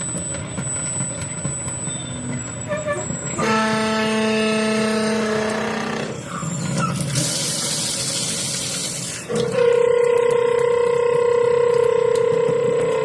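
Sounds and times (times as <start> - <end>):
tap vibrating hum: 0.0 - 2.6, 9.3 - 13.0.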